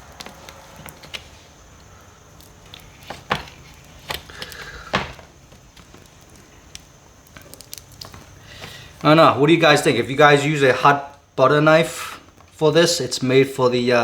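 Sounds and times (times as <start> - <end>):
scraping rustle: 0.0 - 9.1.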